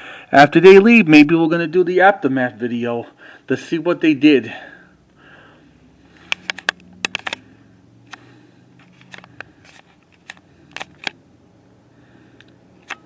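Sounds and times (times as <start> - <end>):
sharp clicks and taps: 6.2 - 7.4.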